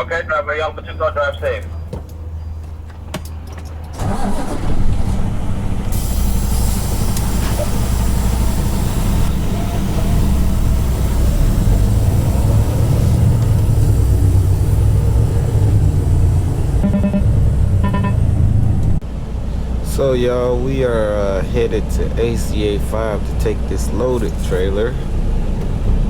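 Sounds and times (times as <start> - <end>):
diesel truck engine: 0.0 - 26.0
hiss: 5.9 - 16.7.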